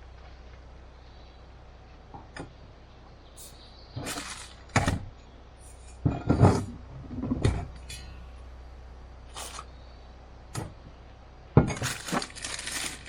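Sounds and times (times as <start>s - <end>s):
faint low hum: 0.0s - 13.0s
knocks and clattering handling: 5.9s - 8.1s.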